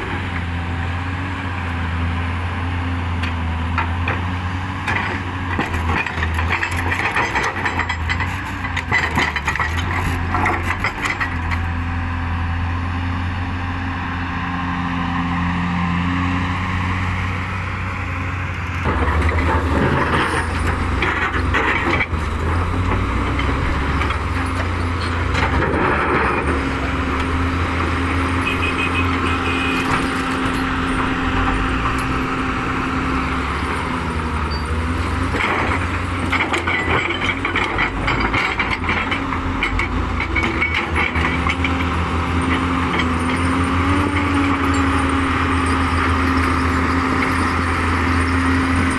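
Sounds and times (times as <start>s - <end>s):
heavy machine diesel engines: 0.0s - 48.9s
knocks and clanks: 3.2s - 11.8s, 18.8s - 28.4s, 33.6s - 45.3s.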